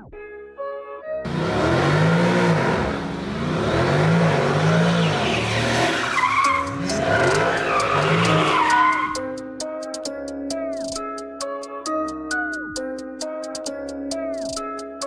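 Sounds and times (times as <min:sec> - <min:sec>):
car engine revving: 0:01.3 - 0:09.2
tyre noise hissing: 0:01.3 - 0:09.2.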